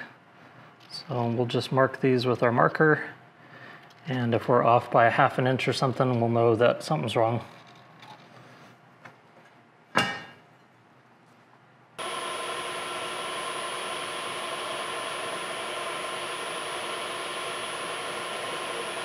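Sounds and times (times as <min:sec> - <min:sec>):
shop machine high whine: 0:12.0 - 0:19.0.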